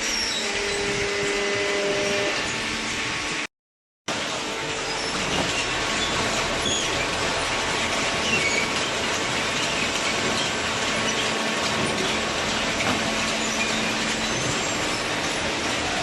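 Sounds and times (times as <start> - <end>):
hydraulic baler running: 4.1 - 16.0
faint squeaks and clatter: 4.7 - 16.0.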